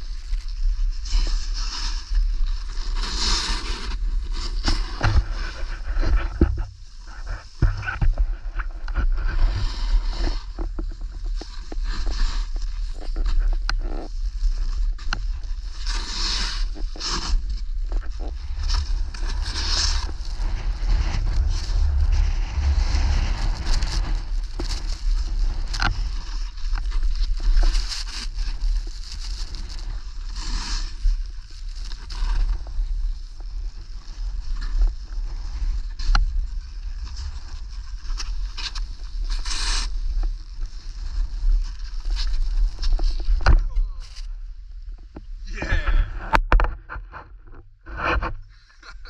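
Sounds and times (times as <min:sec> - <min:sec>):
wind rumble on microphone: 0:00.0 - 0:49.0
skis hissing on snow: 0:01.0 - 0:07.6, 0:15.3 - 0:44.2
wind buffeting microphone: 0:17.4 - 0:26.6.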